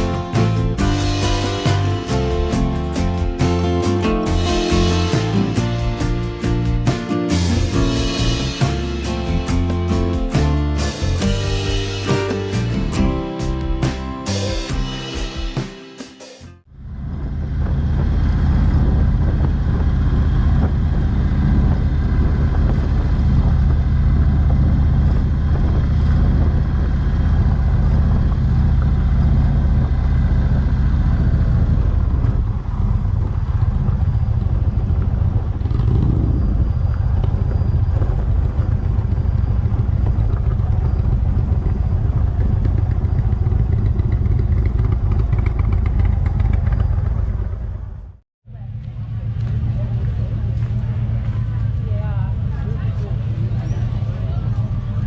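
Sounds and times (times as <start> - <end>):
motorcycle engine cruising: 0.0 - 15.7, 16.7 - 55.0
wind and road noise: 16.7 - 55.0.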